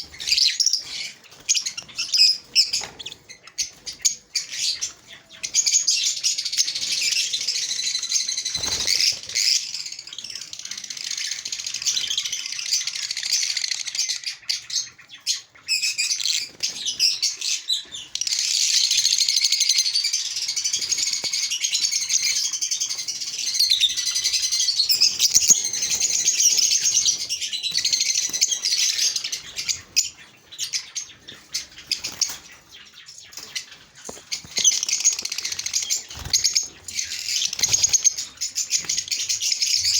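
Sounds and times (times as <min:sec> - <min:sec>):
small birds chirping and twittering: 0:00.0 - 0:39.9
wing flutters: 0:08.5 - 0:09.5.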